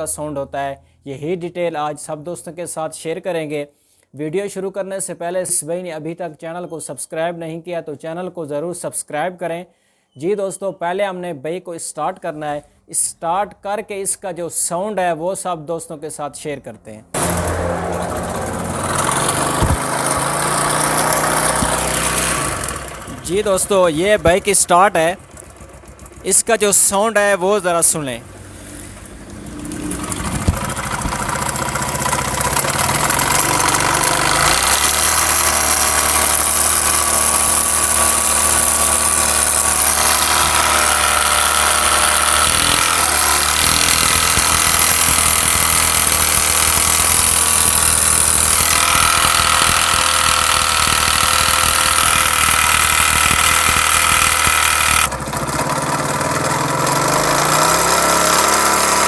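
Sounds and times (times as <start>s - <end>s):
motorcycle engine running: 17.2s - 59.0s
engine knocking: 19.4s - 26.9s, 29.0s - 59.0s.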